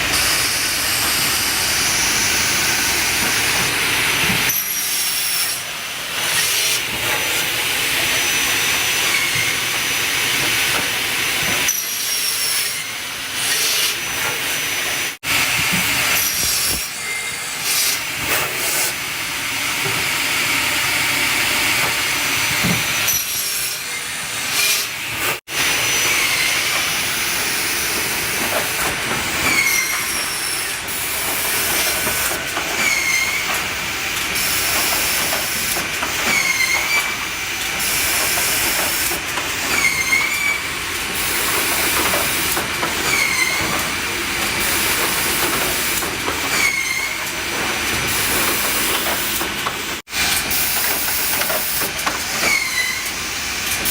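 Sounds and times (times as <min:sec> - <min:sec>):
woodworking machinery running: 0:00.0 - 0:53.9.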